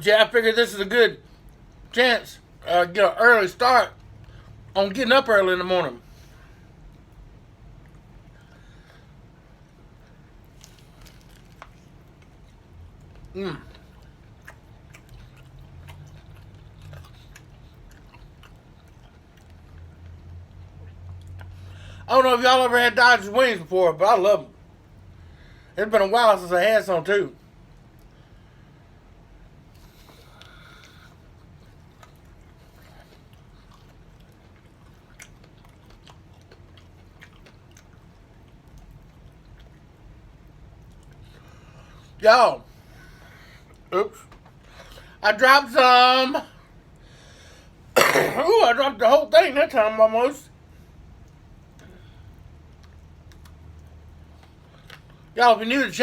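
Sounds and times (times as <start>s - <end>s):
steady low hum: 0.0s - 56.0s
man chewing and biting: 6.1s - 22.0s, 27.5s - 42.2s, 50.6s - 55.4s
wet mouth clicks and smacks: 52.6s - 55.2s.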